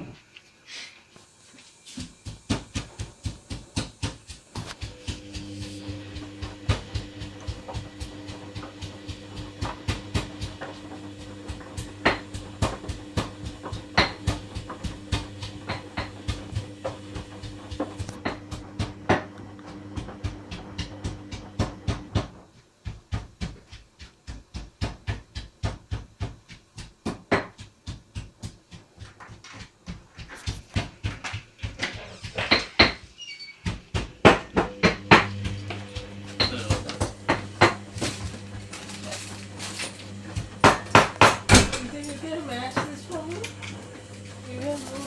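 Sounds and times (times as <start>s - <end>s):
washing machine motor humming: 1.3s - 45.0s
laundry tumbling thuds: 1.9s - 45.0s.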